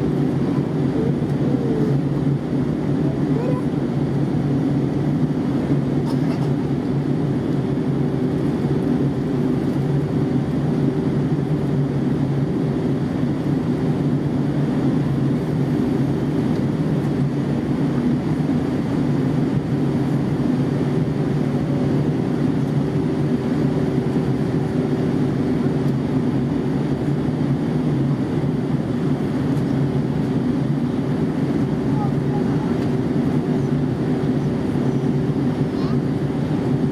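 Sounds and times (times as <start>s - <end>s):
low hums: 0.0s - 6.1s
airliner engine drone: 0.0s - 36.9s.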